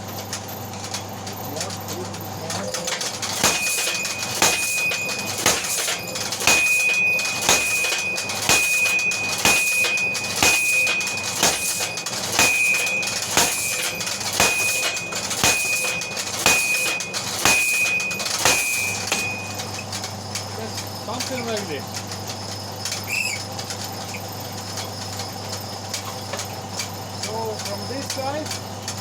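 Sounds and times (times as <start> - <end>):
power hammer drive noise: 0.0 - 29.0
power hammer striking steel: 2.5 - 21.8
high metallic ring: 2.9 - 20.4.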